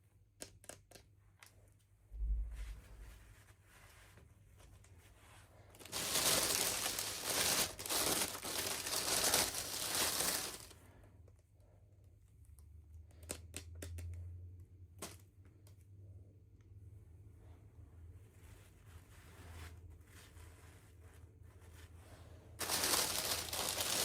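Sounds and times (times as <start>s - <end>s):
plastic packaging crinkling and tearing: 5.8s - 10.7s, 22.6s - 24.0s.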